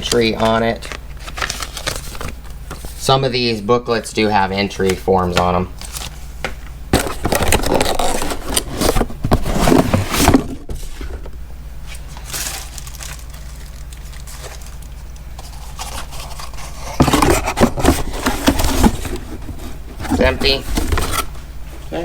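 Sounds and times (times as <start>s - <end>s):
cardboard and paper rustling: 0.0s - 3.6s, 4.8s - 6.3s, 6.9s - 21.4s
steady low hum: 0.0s - 22.0s.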